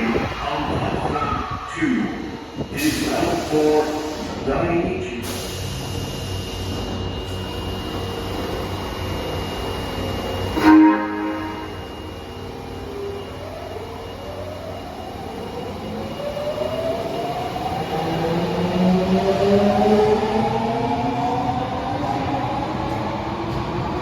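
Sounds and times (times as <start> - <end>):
train inverter whining: 0.0 - 24.0
train horn blast: 10.6 - 11.8.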